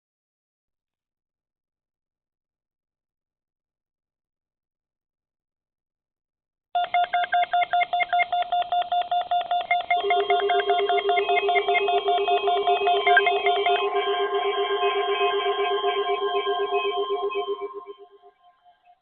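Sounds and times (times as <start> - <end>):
pulsing alternating alert tones: 6.8 - 18.8
steady lower tone: 10.0 - 18.8.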